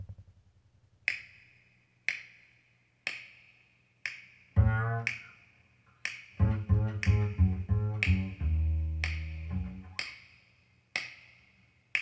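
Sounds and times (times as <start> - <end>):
finger snaps: 1.1 - 10.4, 11.0 - 12.0
plucked double bass: 4.6 - 5.2, 6.4 - 10.0.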